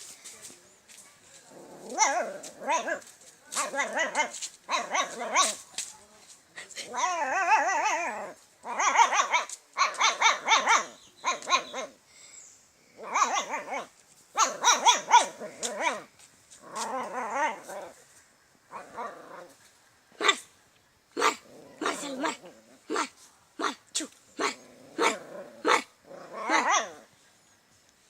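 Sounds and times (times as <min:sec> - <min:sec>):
dog barking and growling: 0:01.5 - 0:05.6, 0:06.8 - 0:12.0, 0:13.0 - 0:18.0, 0:18.7 - 0:20.5, 0:21.1 - 0:27.1.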